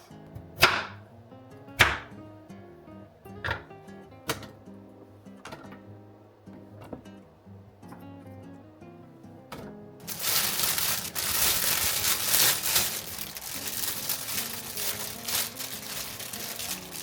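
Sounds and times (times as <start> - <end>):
quiet acoustic guitar music: 0.0 - 10.1
crinkling and rustling: 10.0 - 17.0.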